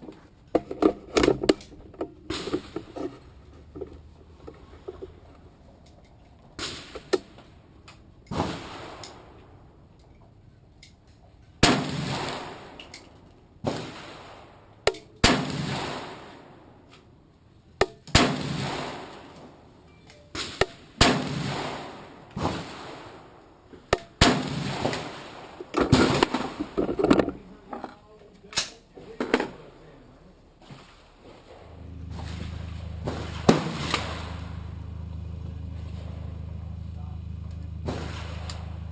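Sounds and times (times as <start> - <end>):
rifle shots echoing: 20.4 - 23.2, 24.2 - 26.5.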